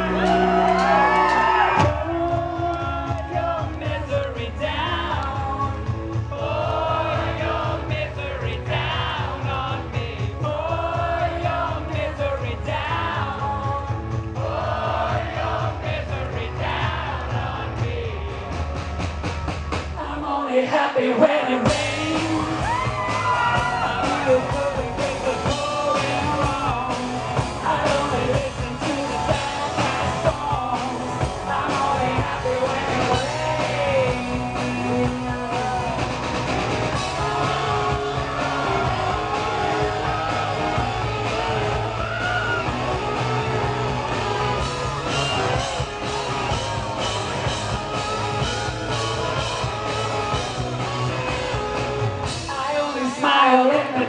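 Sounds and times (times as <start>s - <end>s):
live rock band playing: 0.0s - 20.0s, 21.6s - 54.0s
person singing: 20.0s - 36.1s.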